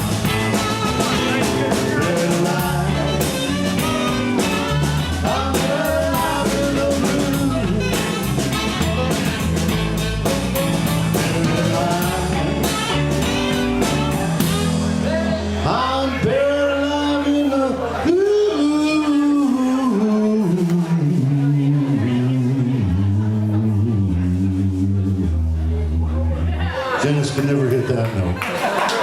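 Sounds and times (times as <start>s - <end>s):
driving drum beat: 0.0s - 15.6s
live blues rock band playing: 0.0s - 27.4s.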